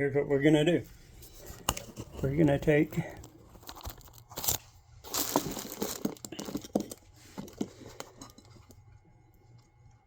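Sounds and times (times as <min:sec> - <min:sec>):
plastic bag crinkling: 0:02.2 - 0:08.4.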